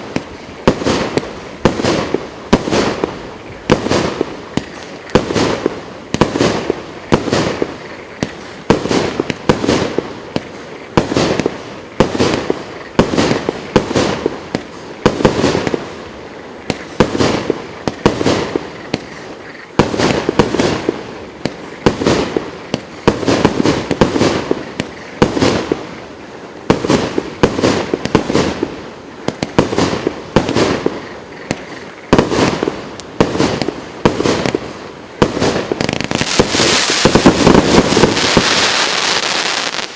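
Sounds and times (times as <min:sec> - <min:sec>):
firework battery firing shots: 0:26.6 - 0:39.9.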